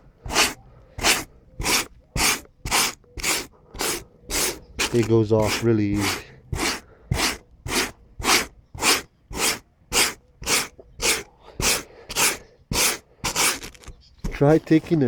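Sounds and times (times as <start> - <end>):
wire brush scrubbing foam: 0.2 - 15.0.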